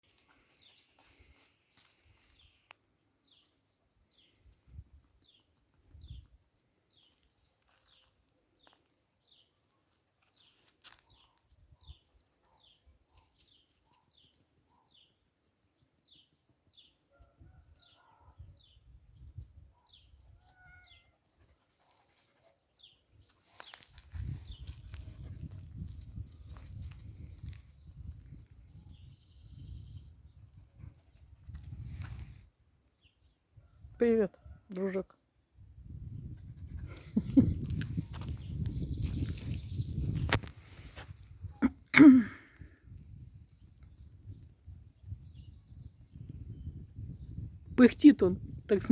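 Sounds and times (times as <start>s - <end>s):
faint bird chirping: 27.7s - 31.2s.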